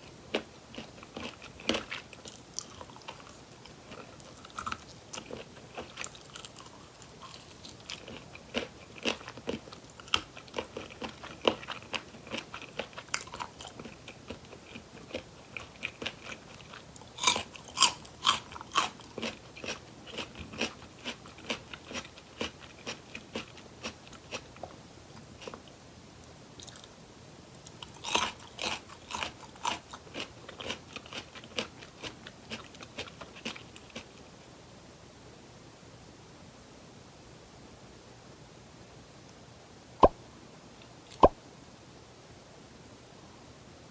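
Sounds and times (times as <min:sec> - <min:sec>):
crunching bites and chewing: 0:00.3 - 0:25.7, 0:26.6 - 0:27.0, 0:27.6 - 0:34.1.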